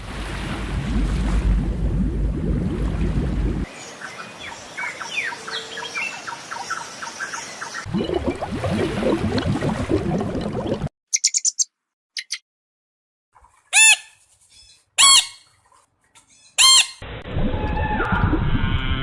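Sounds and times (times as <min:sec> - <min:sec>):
bird-like chattering: 0:11.1 - 0:12.4
high chirps: 0:11.1 - 0:12.4.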